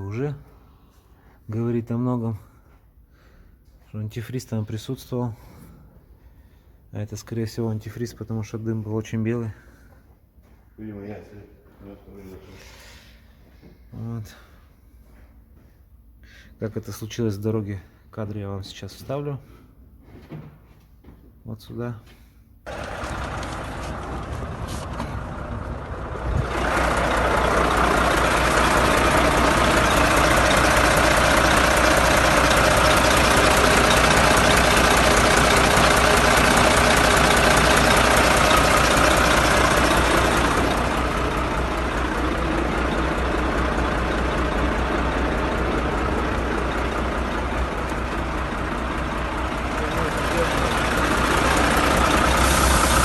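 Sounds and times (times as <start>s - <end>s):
diesel truck engine running: 22.7s - 53.0s.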